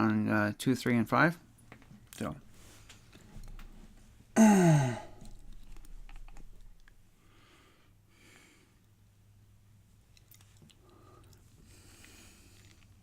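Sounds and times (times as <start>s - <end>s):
person sighing: 4.4s - 5.4s
soft breaths: 7.0s - 9.3s, 10.4s - 13.0s.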